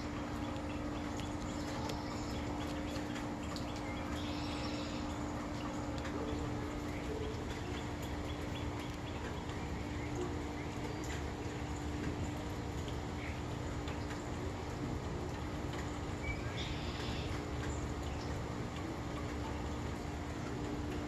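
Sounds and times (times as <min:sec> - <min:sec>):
low continuous hum: 0:00.0 - 0:21.0
faint bird chirps: 0:01.4 - 0:05.2.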